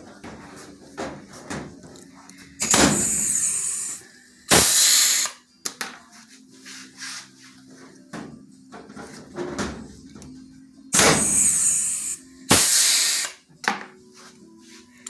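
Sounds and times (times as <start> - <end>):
rivet gun air hiss: 2.6 - 5.4, 11.0 - 13.4.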